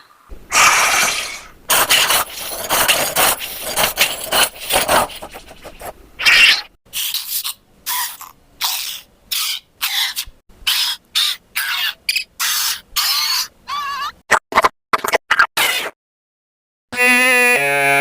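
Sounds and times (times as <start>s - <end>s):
raspy hissing creature: 0.5s - 2.0s.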